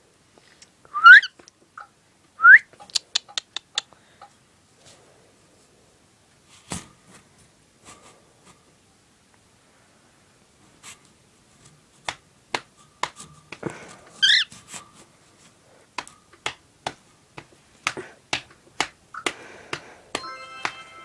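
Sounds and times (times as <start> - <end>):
cockatiel chirping: 1.0 - 1.3, 14.2 - 14.5.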